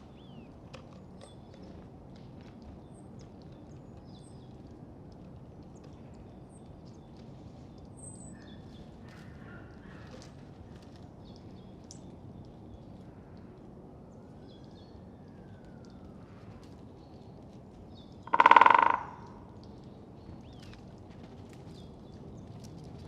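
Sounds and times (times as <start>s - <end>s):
woodpecker drumming on a trunk: 18.3s - 19.4s.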